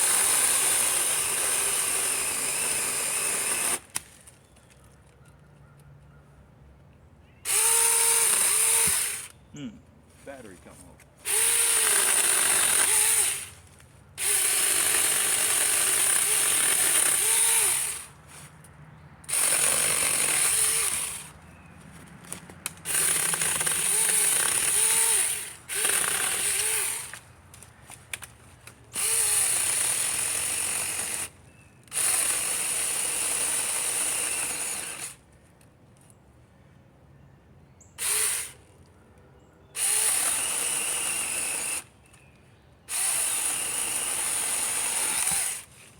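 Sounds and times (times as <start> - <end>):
chainsaw cutting wood: 0.0 - 4.2, 7.5 - 9.4, 11.2 - 13.6, 14.2 - 18.1, 19.3 - 21.4, 22.3 - 27.2, 28.9 - 35.2, 38.0 - 38.6, 39.8 - 41.9, 42.9 - 45.9.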